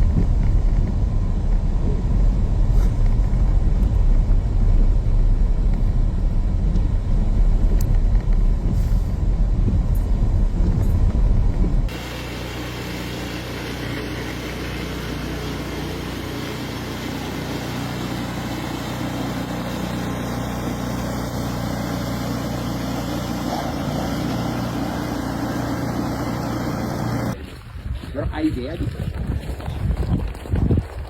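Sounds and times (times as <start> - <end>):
vehicle engine running: 0.0 - 27.4.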